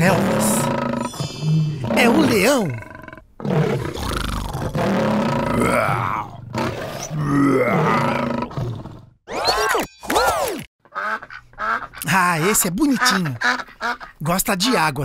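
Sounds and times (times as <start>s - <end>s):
lion roaring: 0.0s - 9.2s.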